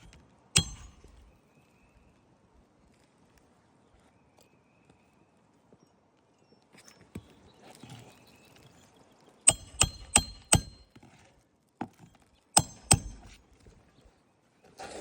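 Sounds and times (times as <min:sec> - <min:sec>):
hammer striking roofing nails: 0:00.6 - 0:01.1, 0:09.5 - 0:10.8, 0:12.6 - 0:13.4.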